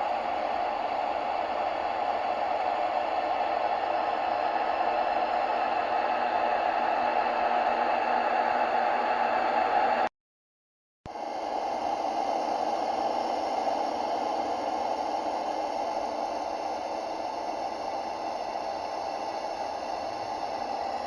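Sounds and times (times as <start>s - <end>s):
hissing noise drone: 11.1s - 21.0s.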